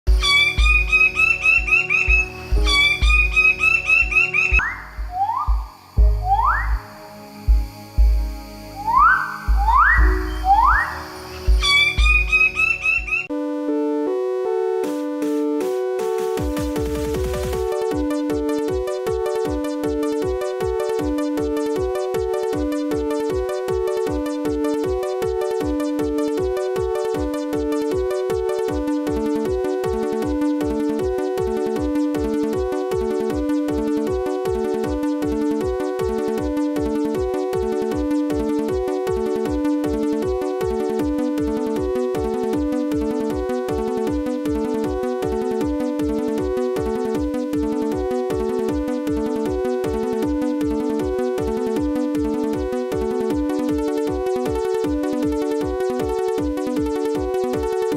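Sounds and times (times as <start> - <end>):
melody of held notes: 0.1 - 16.3
steady drum beat: 2.0 - 3.3, 4.5 - 6.9, 7.5 - 8.4, 9.5 - 10.7, 11.4 - 12.3.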